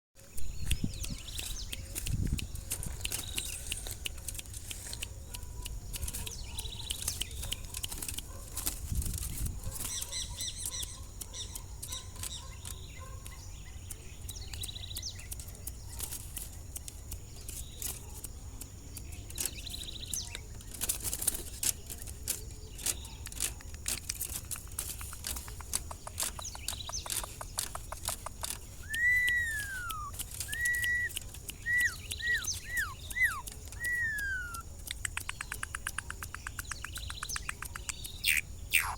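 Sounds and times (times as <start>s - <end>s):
bird clicks: 0.2s - 38.9s
soft bird chirps: 0.2s - 38.9s
bird fluttering: 0.9s - 13.2s, 19.3s - 34.6s
loud whistled bird notes: 28.8s - 34.6s.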